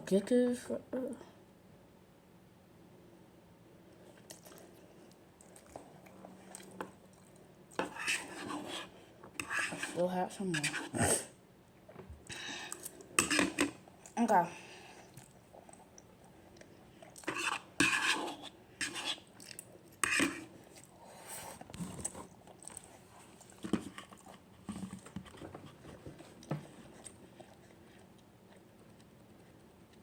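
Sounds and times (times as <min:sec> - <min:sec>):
utensil clinking and scraping dish: 0:17.2 - 0:19.2.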